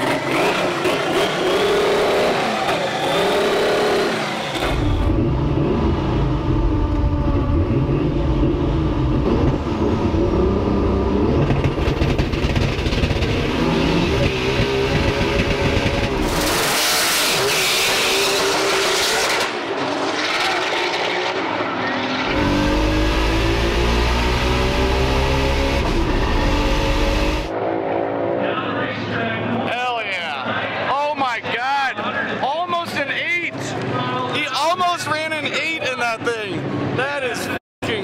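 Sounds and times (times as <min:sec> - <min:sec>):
car engine revving hard: 0:00.0 - 0:27.5.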